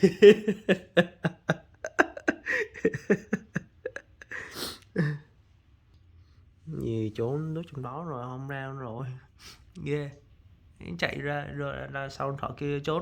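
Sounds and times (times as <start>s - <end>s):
person laughing: 0.0s - 5.2s.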